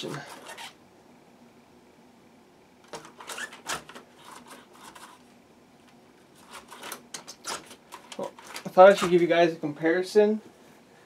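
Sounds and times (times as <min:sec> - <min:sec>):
plastic handling rustling and clattering: 0:02.8 - 0:09.4.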